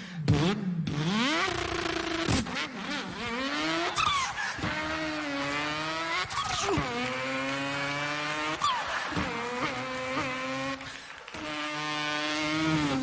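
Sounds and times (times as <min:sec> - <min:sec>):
man imitating car engine: 0:02.8 - 0:13.0.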